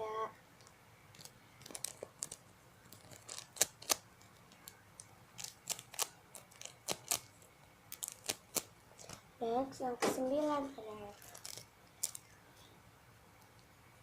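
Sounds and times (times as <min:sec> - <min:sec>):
squishy toy crinkling and clicking: 0:01.1 - 0:04.8, 0:05.4 - 0:09.2, 0:11.2 - 0:12.3.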